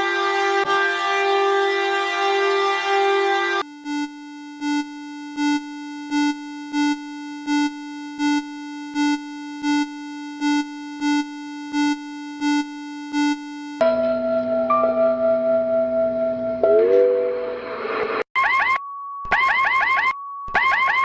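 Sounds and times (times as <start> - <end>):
pulsing electronic alarm tone: 0.0 - 13.8, 18.4 - 21.0.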